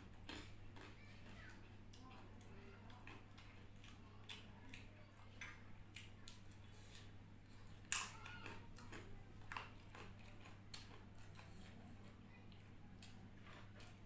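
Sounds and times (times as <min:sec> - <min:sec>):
person chewing noodles: 0:00.0 - 0:01.1, 0:02.9 - 0:04.8, 0:08.4 - 0:11.8, 0:12.6 - 0:14.0
faint low hum: 0:00.0 - 0:14.0.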